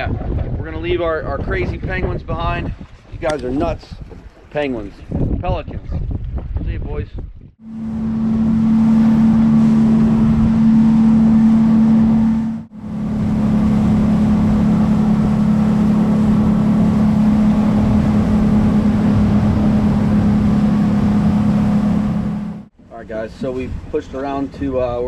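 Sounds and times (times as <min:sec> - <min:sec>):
motorboat engine drone: 0:07.6 - 0:22.7
wind and water hiss: 0:07.6 - 0:25.0.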